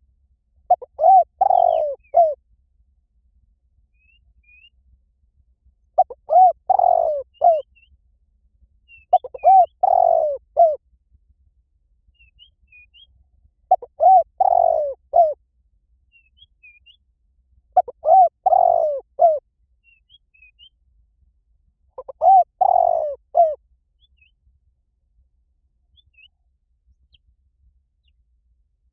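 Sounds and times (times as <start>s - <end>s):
dove cooing: 0.7s - 2.4s, 6.0s - 7.6s, 9.1s - 10.8s, 13.7s - 15.4s, 17.8s - 19.4s, 22.0s - 23.6s
small birds chirping: 0.7s - 2.4s, 6.0s - 8.0s, 8.9s - 10.8s, 13.7s - 15.4s, 17.8s - 20.8s, 22.0s - 24.4s.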